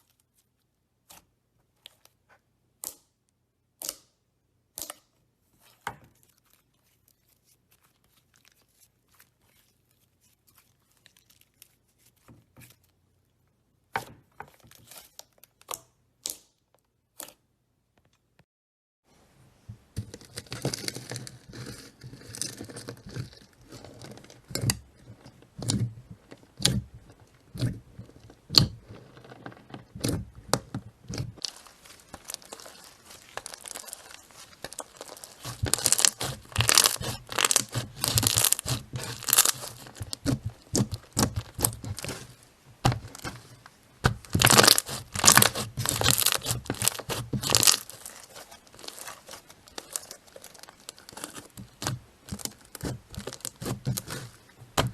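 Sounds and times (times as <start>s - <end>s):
slime crackling and popping: 20.2s - 54.9s.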